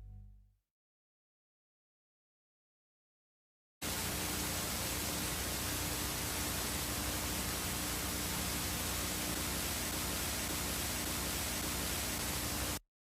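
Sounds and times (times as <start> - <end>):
static hiss: 3.8 - 12.8.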